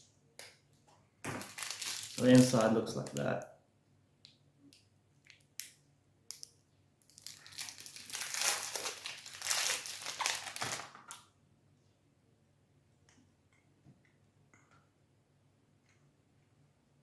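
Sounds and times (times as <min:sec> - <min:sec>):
plastic wrapper crinkling: 0:01.3 - 0:03.4, 0:07.0 - 0:11.2.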